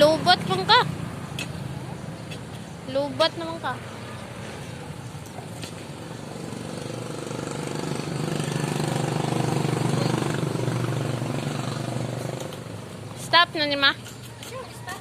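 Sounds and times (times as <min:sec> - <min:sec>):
vehicle engine passing by: 0:03.5 - 0:13.4.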